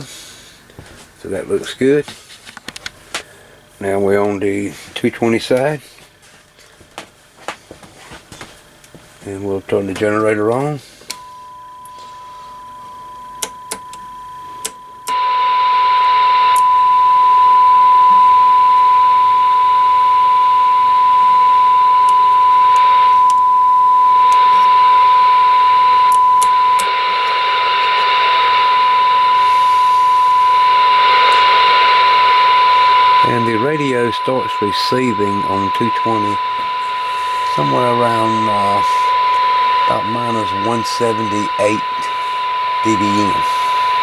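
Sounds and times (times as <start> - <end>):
steady test tone from radio speaker: 10.4 - 44.0
static hiss: 15.1 - 44.0.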